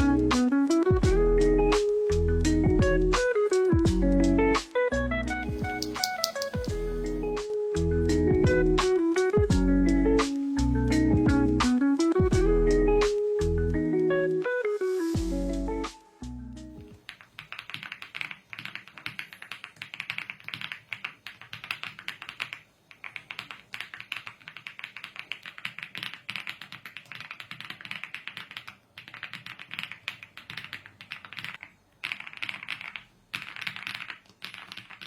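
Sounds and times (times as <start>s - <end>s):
mechanical keyboard typing: 5.6s - 6.7s, 17.0s - 35.0s.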